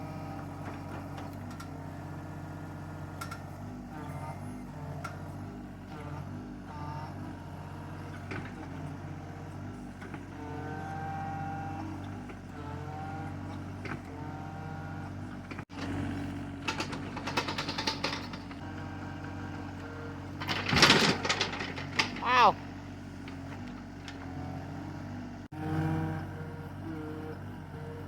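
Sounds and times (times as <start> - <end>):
diesel engine running: 0.0 - 28.0
clanks and cracks: 20.4 - 22.3.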